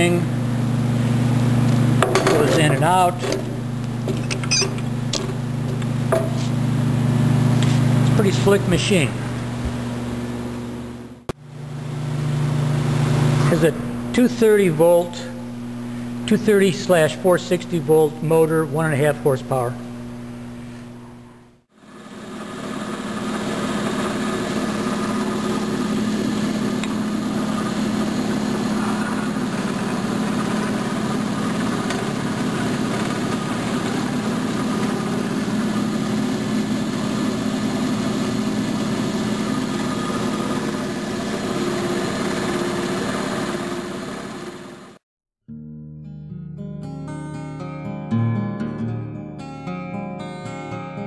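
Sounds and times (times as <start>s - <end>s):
electric motor humming: 22.7s - 44.9s.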